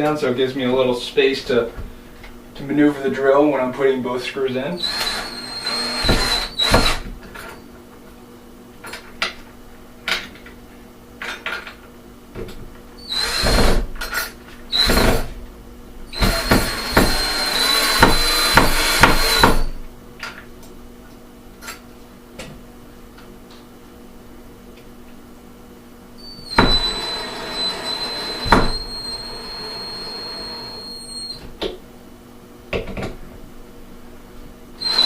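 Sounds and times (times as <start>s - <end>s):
power drill motor whining: 4.8s - 7.0s, 13.0s - 13.8s, 16.1s - 19.8s, 26.2s - 31.4s, 34.8s - 35.0s.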